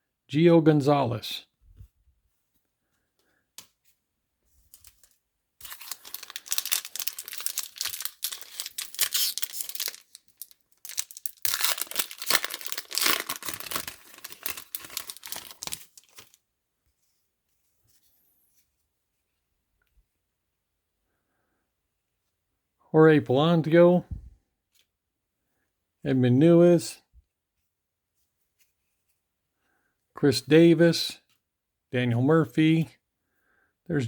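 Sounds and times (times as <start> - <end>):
wrapper tearing and crinkling: 4.8 - 16.4.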